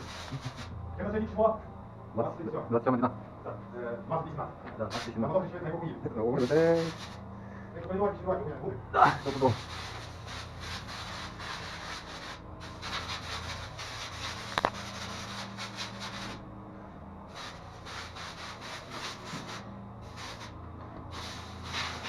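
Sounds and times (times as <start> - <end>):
rubbing sanding strokes: 0.0 - 0.7, 6.4 - 7.2, 9.2 - 16.4, 17.3 - 22.0
low steady hum: 0.0 - 22.0.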